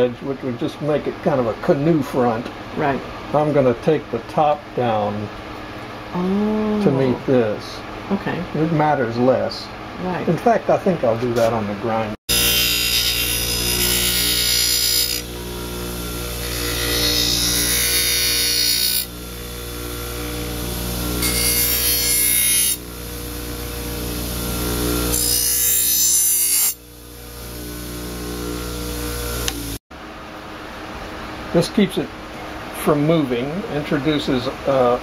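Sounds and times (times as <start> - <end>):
electric grinder running: 12.3 - 29.8.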